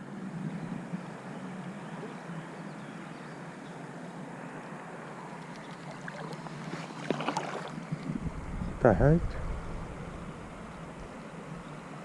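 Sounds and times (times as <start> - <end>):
river water rushing: 0.8 - 8.5.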